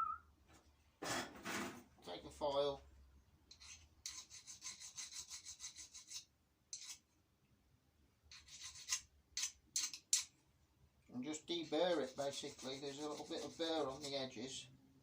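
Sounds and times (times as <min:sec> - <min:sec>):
hand file scraping metal: 0:03.5 - 0:07.1, 0:08.3 - 0:10.3, 0:11.3 - 0:14.6.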